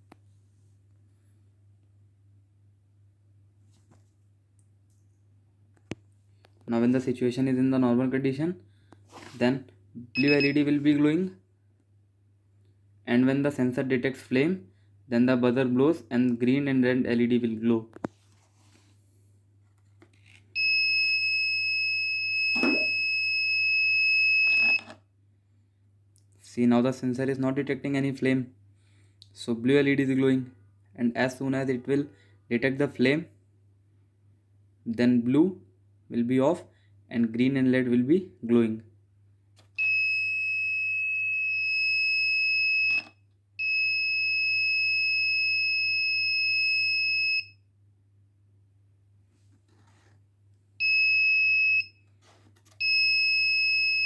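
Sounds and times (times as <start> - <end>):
high-pitched alarm buzzer: 22.5 - 23.1.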